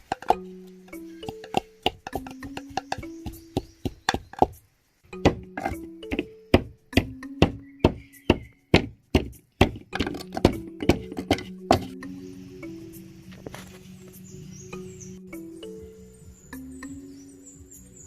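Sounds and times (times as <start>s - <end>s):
stone pounding in a mortar: 0.0s - 4.6s, 5.2s - 12.0s
background music: 0.0s - 18.0s.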